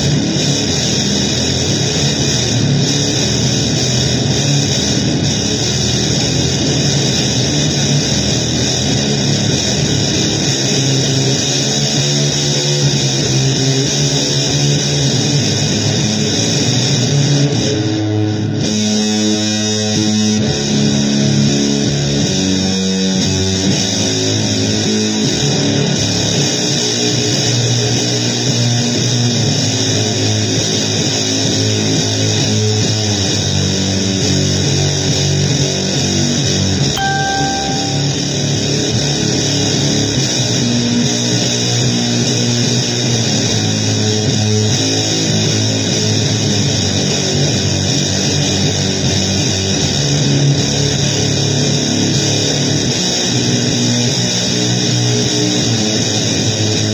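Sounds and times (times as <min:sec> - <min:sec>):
electric guitar held notes: 0:36.9 - 0:38.5.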